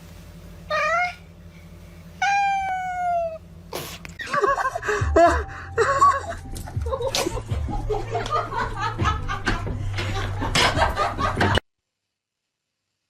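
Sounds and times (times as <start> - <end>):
low steady hum: 0.0 - 11.6
people laughing: 4.2 - 11.6.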